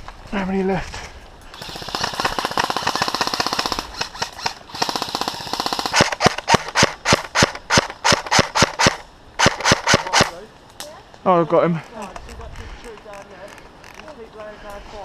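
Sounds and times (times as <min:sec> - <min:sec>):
airsoft gun firing: 0:01.6 - 0:10.4.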